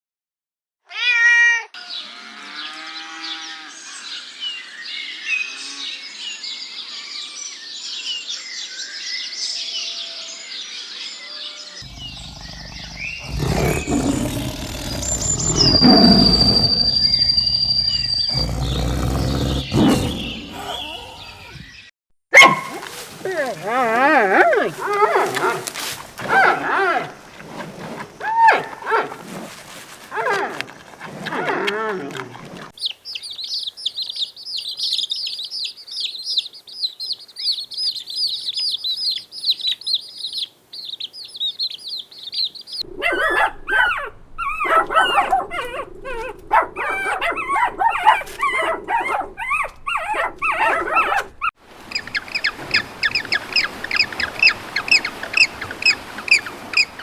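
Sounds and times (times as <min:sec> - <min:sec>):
farm animal calls: 0:11.8 - 0:21.6, 0:22.4 - 0:51.3
rapid bird chirping: 0:11.8 - 0:21.7, 0:32.4 - 0:42.8.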